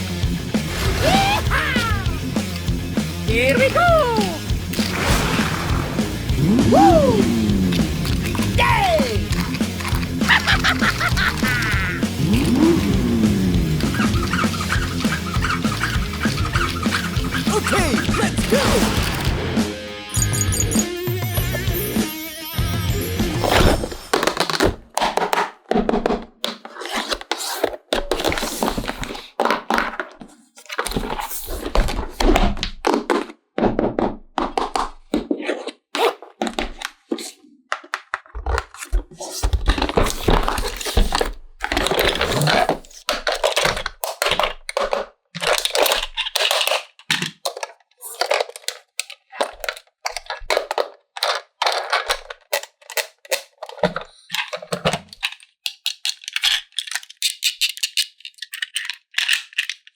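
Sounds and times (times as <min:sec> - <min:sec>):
handling plastic toy parts: 0:07.1 - 0:19.1, 0:23.8 - 0:33.4, 0:34.4 - 0:59.9.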